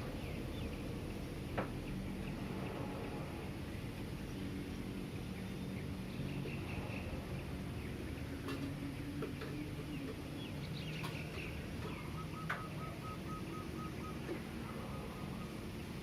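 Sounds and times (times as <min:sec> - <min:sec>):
distant traffic hum: 0:00.0 - 0:16.0
birds chirping: 0:04.1 - 0:16.0.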